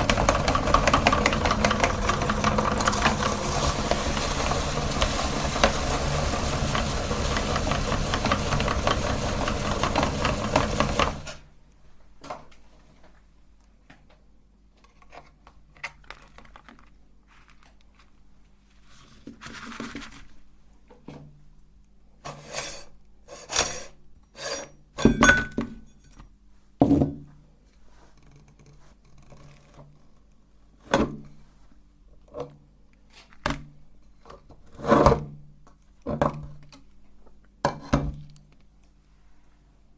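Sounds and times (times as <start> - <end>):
electric meat grinder running: 0.0 - 11.4.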